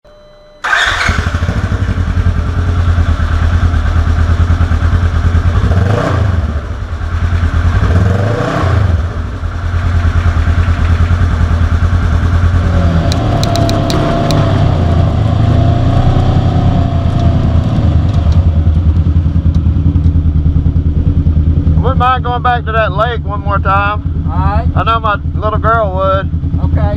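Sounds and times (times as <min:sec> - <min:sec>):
vehicle engine revving: 0:00.6 - 0:26.9
sharp ticks: 0:13.0 - 0:14.4.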